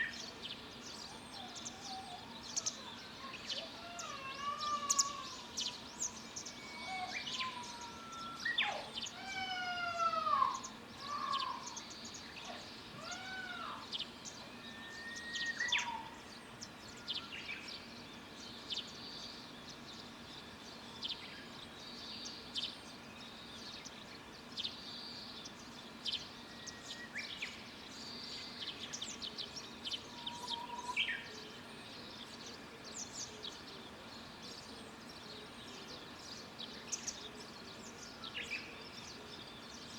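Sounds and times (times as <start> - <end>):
birds whistled calls: 0.9 - 16.2, 29.9 - 31.4.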